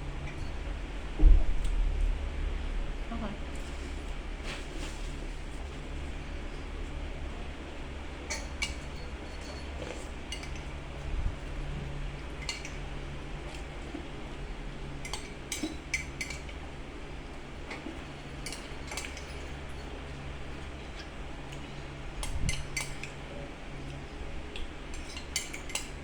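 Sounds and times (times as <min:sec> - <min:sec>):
steady low hum: 0:00.0 - 0:26.0
utensils clinking against dish: 0:08.2 - 0:10.7, 0:12.4 - 0:12.8, 0:15.0 - 0:16.6, 0:17.7 - 0:23.2, 0:24.9 - 0:26.0.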